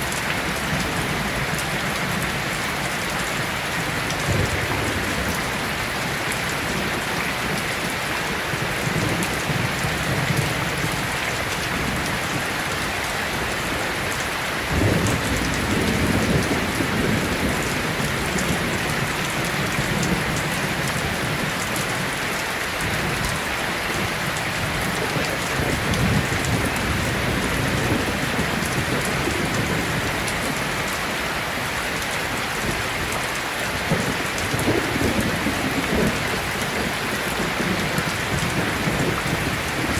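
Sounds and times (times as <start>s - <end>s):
heavy rain on a metal roof: 0.0s - 39.9s
thunder rumbling: 3.9s - 7.6s, 14.6s - 21.6s, 32.6s - 39.9s.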